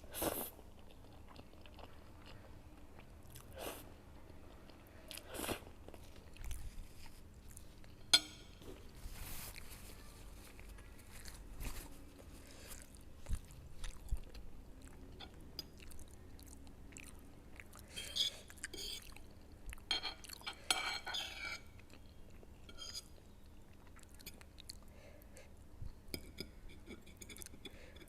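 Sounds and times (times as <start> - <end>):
person chewing food: 0.2 - 3.6, 4.3 - 9.7, 10.5 - 20.5.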